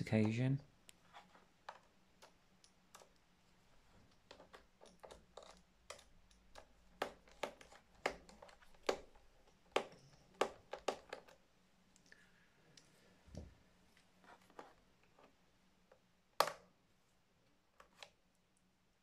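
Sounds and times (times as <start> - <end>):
screwdriver clicking on plastic: 4.1 - 11.4.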